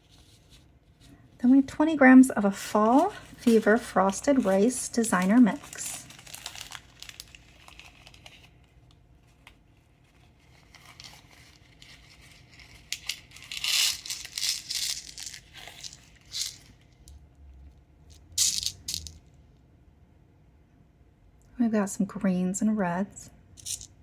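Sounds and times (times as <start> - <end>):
plastic packaging crinkling: 2.4 - 17.2, 18.4 - 19.2.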